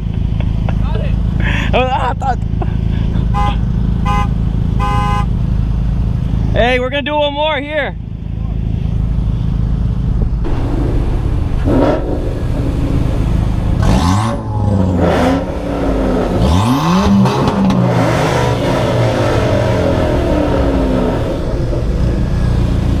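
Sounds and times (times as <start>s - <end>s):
car engine accelerating: 8.0s - 23.0s.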